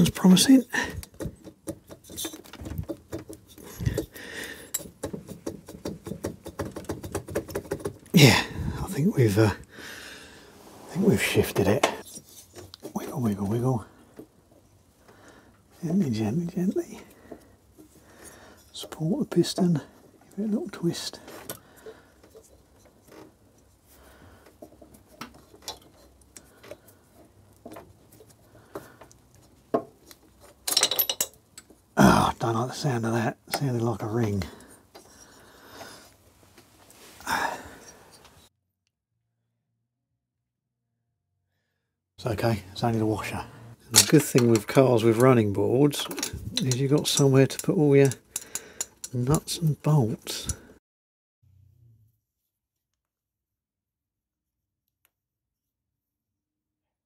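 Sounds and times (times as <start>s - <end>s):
metal clicks and rattles: 28.7s - 31.8s, 43.9s - 50.7s
light metal clicks and taps: 46.0s - 49.5s, 50.2s - 50.7s.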